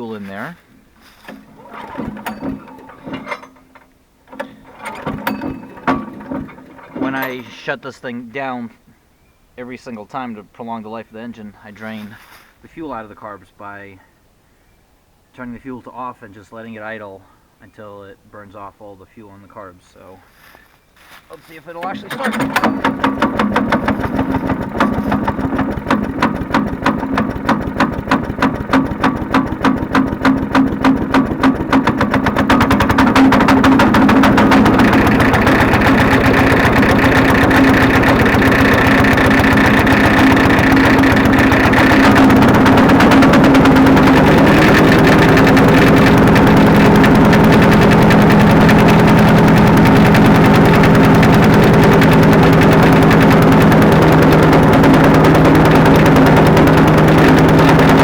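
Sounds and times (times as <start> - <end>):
wood chipper engine running: 0.0 - 7.8, 21.3 - 58.0.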